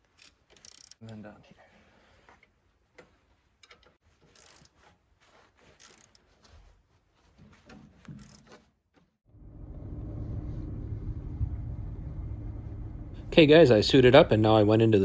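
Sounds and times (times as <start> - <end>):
wrench clicks and taps: 0.1 - 1.0, 3.0 - 4.8
engine low rumble: 9.3 - 14.7.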